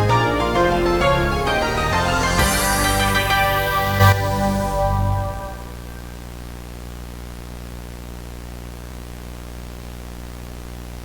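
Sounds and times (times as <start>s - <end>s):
music: 0.0s - 6.1s
static hiss: 1.9s - 11.0s
low electrical hum: 4.2s - 11.0s.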